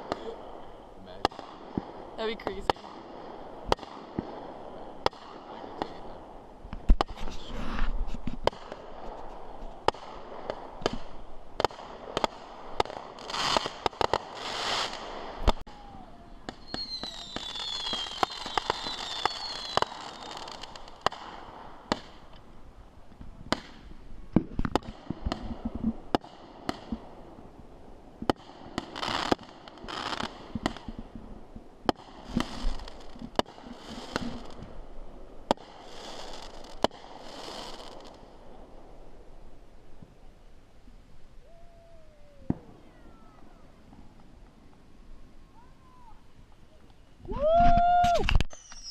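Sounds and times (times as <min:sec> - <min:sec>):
fireworks bangs: 0:00.0 - 0:22.5, 0:23.2 - 0:27.3, 0:28.2 - 0:39.2, 0:41.5 - 0:46.4
fireworks crackling: 0:00.0 - 0:48.9
high wavering whistle: 0:48.5 - 0:48.9.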